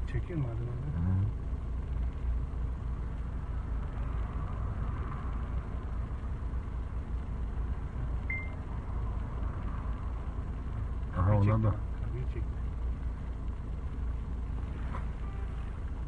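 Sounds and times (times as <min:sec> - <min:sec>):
low street rumble with hiss: 0:00.0 - 0:16.0
short high beep: 0:08.3 - 0:08.6.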